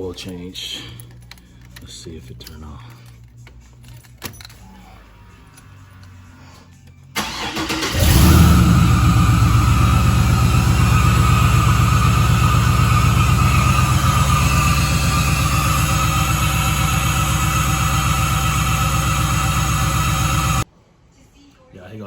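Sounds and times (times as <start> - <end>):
car engine idling: 7.2 - 20.6.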